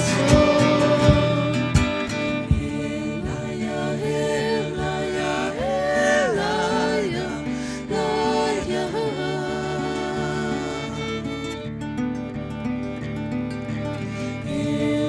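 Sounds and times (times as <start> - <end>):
acoustic guitar accompaniment: 0.0 - 15.0.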